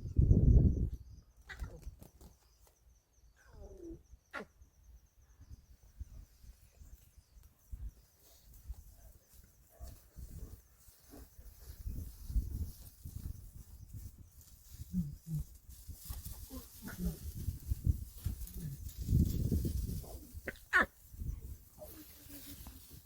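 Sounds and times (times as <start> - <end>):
faint insect trill: 0.0 - 23.0
lion cub mewing: 20.4 - 20.9.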